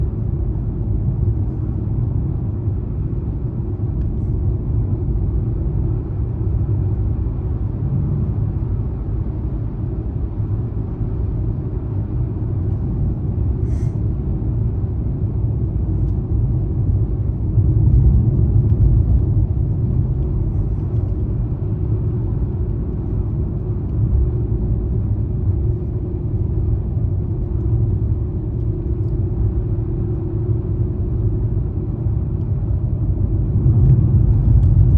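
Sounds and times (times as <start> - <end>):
car engine and tyres rumbling: 0.0 - 34.9.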